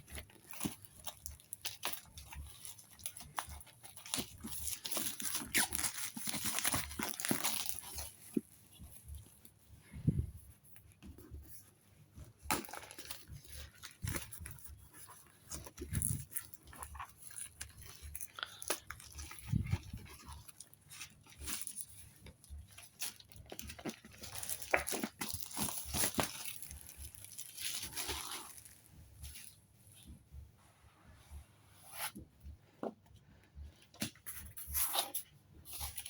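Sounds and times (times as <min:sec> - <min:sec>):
wrapping torn and crinkled: 0:00.0 - 0:09.5, 0:12.4 - 0:29.6.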